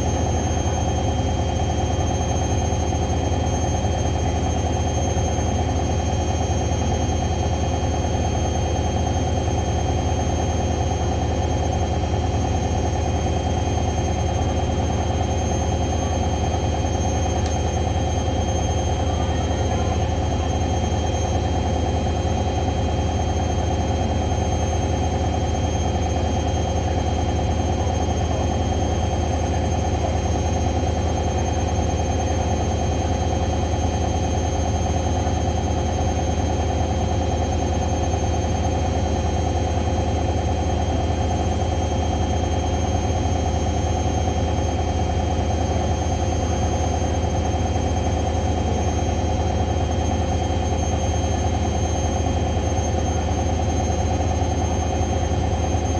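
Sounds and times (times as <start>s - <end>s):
washing machine spinning: 0.0s - 55.9s.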